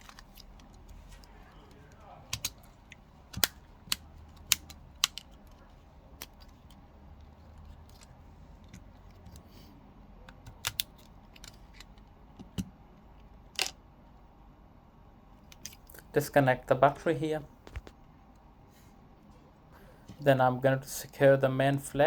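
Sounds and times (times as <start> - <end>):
tools and plastic parts clicking: 0.0 - 9.5, 10.3 - 13.8, 15.4 - 16.0.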